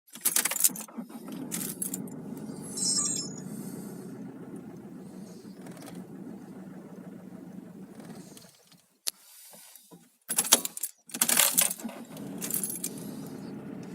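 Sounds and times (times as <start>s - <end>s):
engine rattles: 0.3s - 2.8s, 3.4s - 9.7s, 10.4s - 13.9s
diesel engine hum: 0.9s - 8.6s, 12.1s - 13.9s
brief high-pitched sound: 2.6s - 3.4s.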